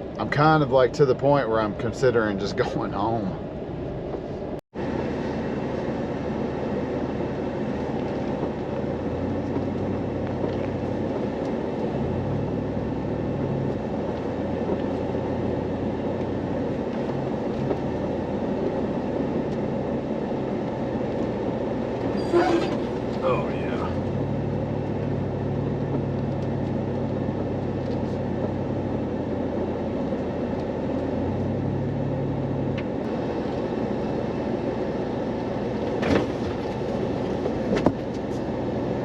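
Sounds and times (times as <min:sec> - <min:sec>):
truck engine and tyres rumbling: 0:00.0 - 0:39.0.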